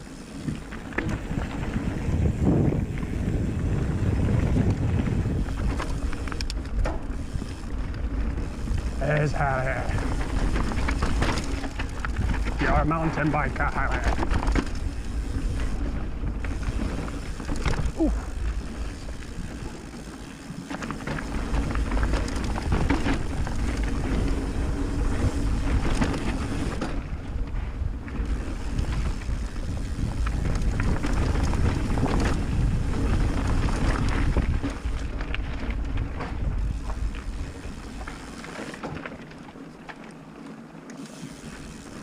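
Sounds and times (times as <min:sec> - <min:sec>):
tyres rolling over stones: 0:00.0 - 0:27.1, 0:28.2 - 0:42.0
wind buffeting microphone: 0:00.0 - 0:38.3
bike frame rattling: 0:00.0 - 0:40.1, 0:41.0 - 0:42.0.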